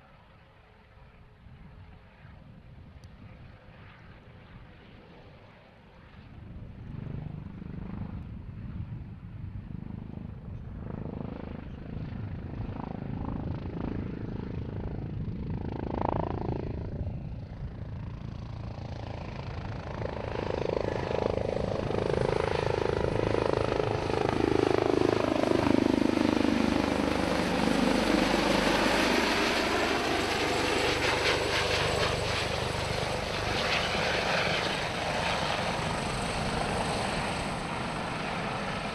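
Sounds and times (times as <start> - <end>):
helicopter rumble: 0.0 - 38.9.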